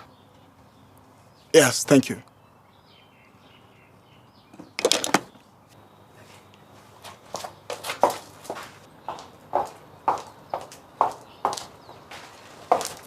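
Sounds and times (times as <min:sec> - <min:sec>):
sharp knocks clattering: 0:04.5 - 0:05.4
footsteps on hard floor: 0:07.0 - 0:13.0.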